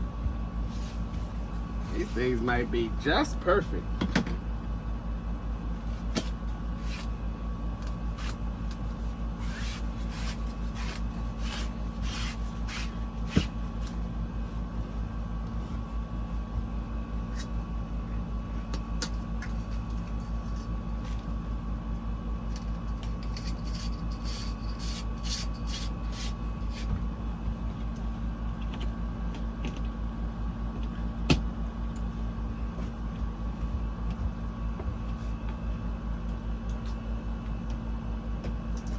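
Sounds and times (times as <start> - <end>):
low pulsing mechanical hum: 0.0 - 38.9.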